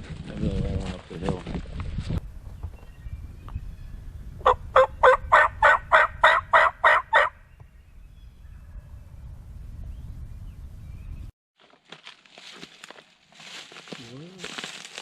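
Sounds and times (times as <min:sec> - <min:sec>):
turkey yelps: 0:04.4 - 0:07.4.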